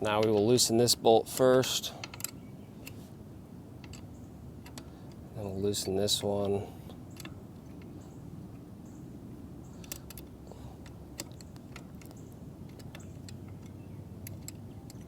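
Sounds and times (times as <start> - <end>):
faint steady hum: 0.0 - 15.0
allen wrench clicking on bolts: 1.9 - 3.0, 3.8 - 5.2, 9.8 - 15.0.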